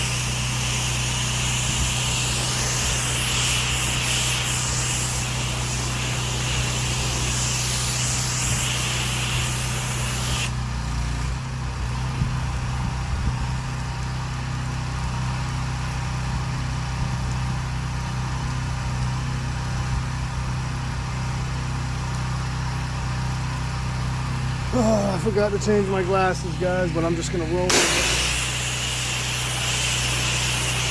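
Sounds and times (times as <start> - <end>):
water spraying hiss: 0.0 - 10.5, 24.8 - 30.9
pressure washer engine running: 0.0 - 30.9.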